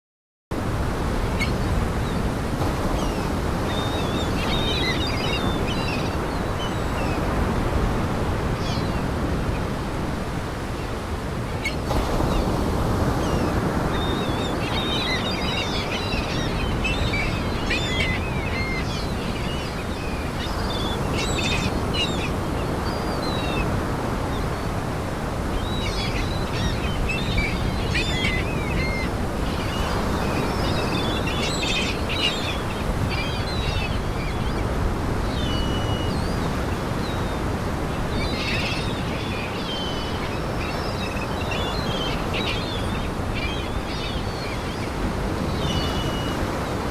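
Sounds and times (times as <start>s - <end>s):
surf washing: 0.6s - 46.9s
gulls calling: 11.6s - 46.9s.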